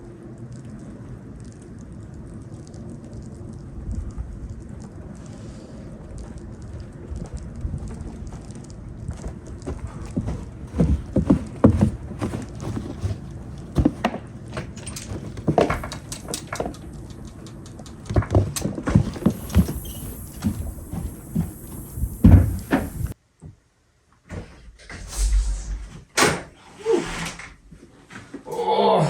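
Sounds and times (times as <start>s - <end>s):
gear knocking and clattering: 13.6s - 23.2s
door opening and closing: 14.6s - 17.3s, 18.0s - 23.2s.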